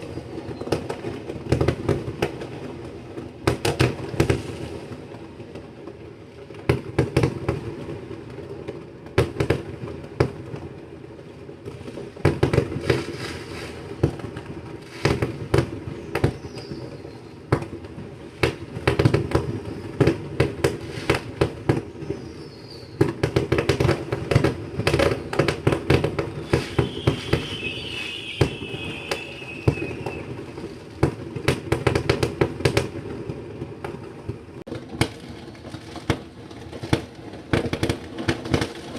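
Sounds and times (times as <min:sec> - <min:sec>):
falling firework whistle: 0:00.0 - 0:01.1, 0:15.9 - 0:17.5, 0:21.8 - 0:23.2, 0:25.0 - 0:31.0
firework crackling: 0:00.0 - 0:38.9
fireworks bangs and pops: 0:00.0 - 0:38.9.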